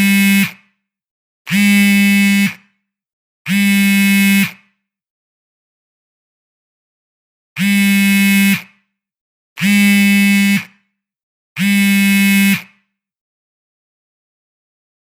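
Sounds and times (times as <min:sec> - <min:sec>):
mobile phone vibrating: 0:00.0 - 0:00.7, 0:01.5 - 0:02.8, 0:03.5 - 0:04.8, 0:07.6 - 0:08.8, 0:09.6 - 0:10.9, 0:11.6 - 0:12.9.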